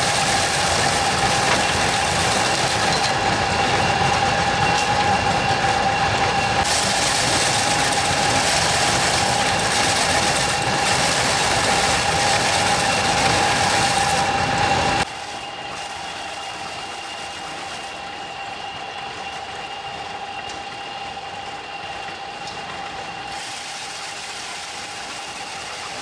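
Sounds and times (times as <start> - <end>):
small engine running: 0.0 - 18.5
steady whine: 0.0 - 24.4.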